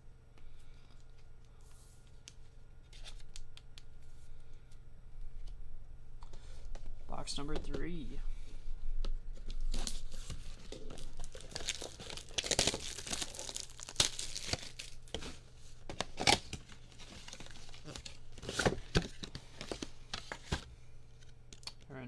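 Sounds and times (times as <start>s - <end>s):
plastic wrapping tearing and crinkling: 9.4s - 20.6s.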